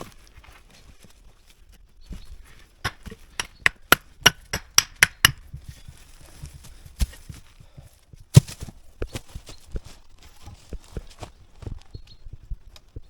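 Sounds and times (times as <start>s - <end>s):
sharp knocks: 2.8s - 5.6s.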